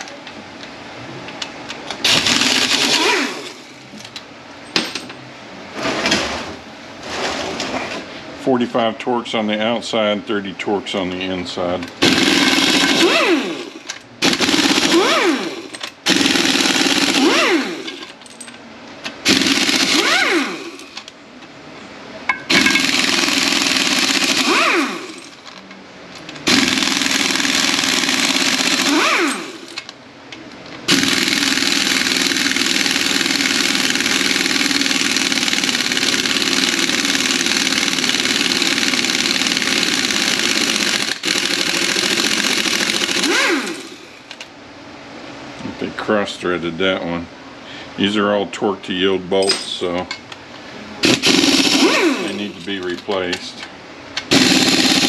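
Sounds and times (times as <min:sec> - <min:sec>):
power wrench whirring: 0:02.0 - 0:03.9, 0:12.0 - 0:18.2, 0:19.1 - 0:21.1, 0:22.5 - 0:25.5, 0:26.4 - 0:29.9, 0:30.9 - 0:44.4, 0:51.0 - 0:53.1, 0:54.2 - 0:55.0.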